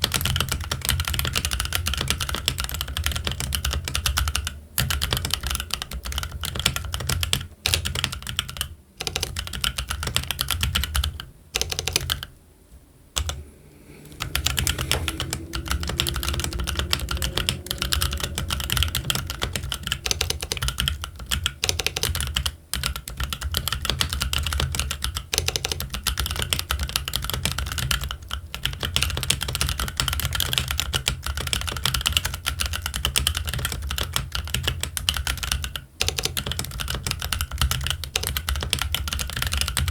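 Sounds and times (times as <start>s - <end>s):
typing on mechanical keyboard: 0.1s - 12.3s, 31.7s - 39.9s.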